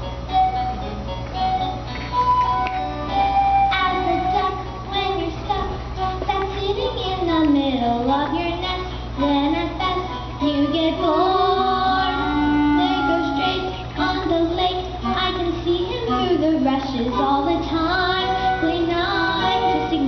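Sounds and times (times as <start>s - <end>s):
steady low hum: 0.0s - 20.0s
children and women singing: 8.6s - 20.0s.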